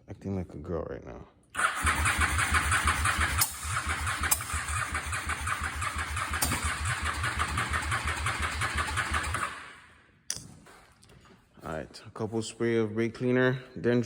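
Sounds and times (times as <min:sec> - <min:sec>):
motorcycle engine cranking: 0:01.6 - 0:09.8.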